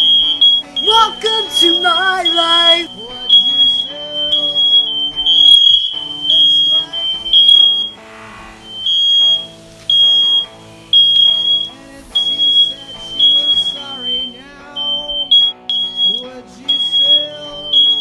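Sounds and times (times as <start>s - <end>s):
background music: 0.0s - 18.0s
smoke alarm beeping: 0.0s - 18.0s.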